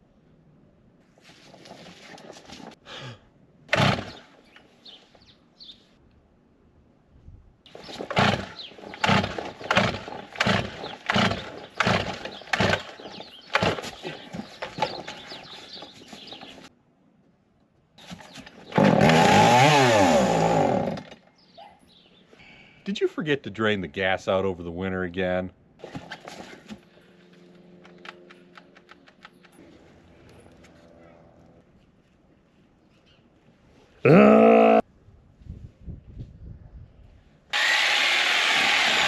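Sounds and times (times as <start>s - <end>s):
chainsaw engine revving: 3.7s - 4.2s, 7.7s - 14.2s, 18.7s - 21.2s, 37.5s - 39.0s
chainsaw starter cord yanks: 3.7s - 4.2s, 7.7s - 15.3s, 18.3s - 21.3s.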